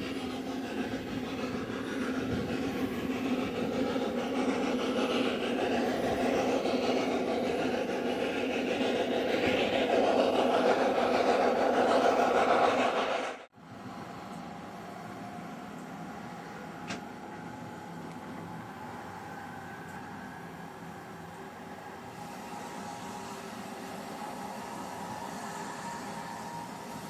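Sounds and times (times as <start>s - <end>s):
rack train running: 0.0s - 13.5s.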